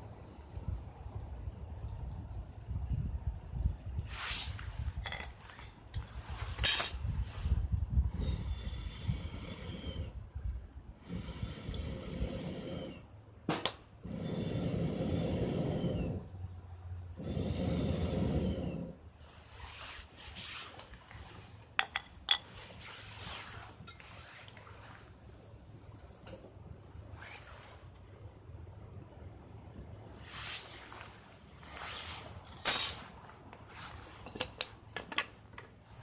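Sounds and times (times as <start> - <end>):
blowing hiss with whistle: 6.4 - 10.2, 11.0 - 13.1, 17.2 - 20.8, 31.7 - 33.2.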